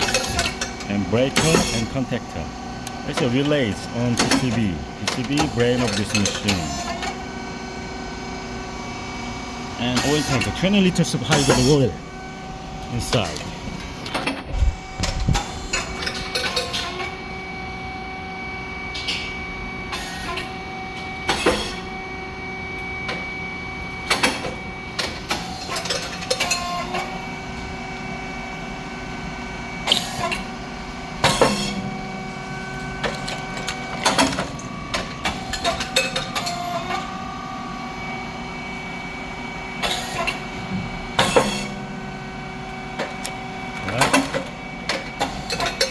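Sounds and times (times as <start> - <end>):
machine mechanism clanks and rattles: 0.0 - 2.0, 4.1 - 7.2, 9.8 - 11.9, 13.0 - 17.2, 21.2 - 21.8, 24.0 - 27.2, 31.2 - 31.9, 33.0 - 37.1, 39.8 - 41.8, 43.0 - 45.9
machine pump and motor hum: 0.0 - 45.9.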